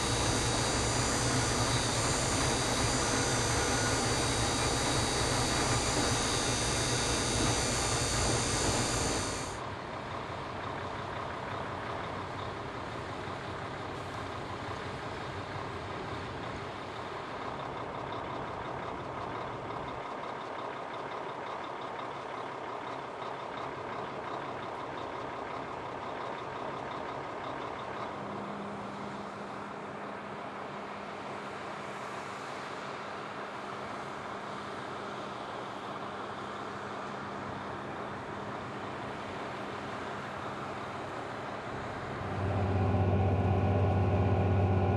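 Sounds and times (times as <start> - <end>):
harvesting machinery running: 0.0 - 9.6, 39.6 - 44.9
low hum: 0.0 - 9.6, 41.3 - 44.9.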